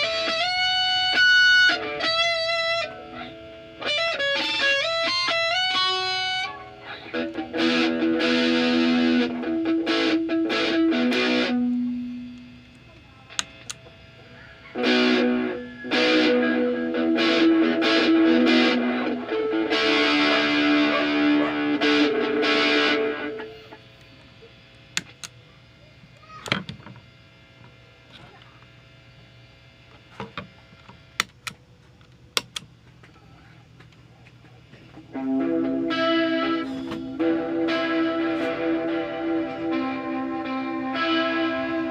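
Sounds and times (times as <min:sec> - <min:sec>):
distorted electric guitar: 0:00.0 - 0:28.2, 0:34.6 - 0:41.9
low steady hum: 0:00.0 - 0:41.9
sharp clicks: 0:25.0 - 0:25.4, 0:31.2 - 0:33.0.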